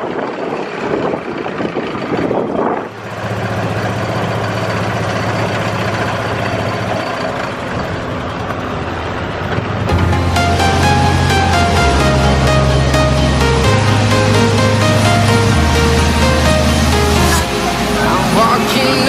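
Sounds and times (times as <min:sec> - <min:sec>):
wind buffeting microphone: 0:00.0 - 0:04.9
engine idling: 0:00.0 - 0:19.0.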